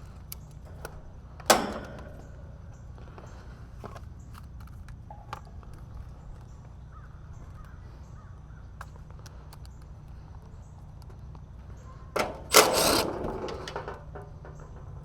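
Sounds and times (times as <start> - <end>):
steady low hum: 0.0 - 15.0
faint bird calls: 6.3 - 10.9.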